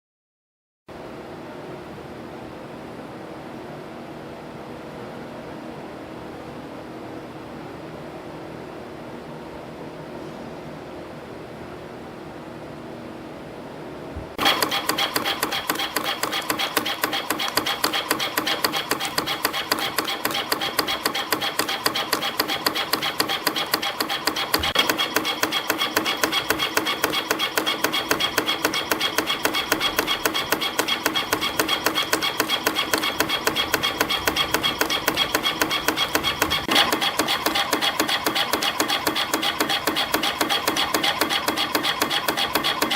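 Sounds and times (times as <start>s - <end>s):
machine whine: 14.4s - 42.9s
spring coiling machine clatter: 14.4s - 42.9s.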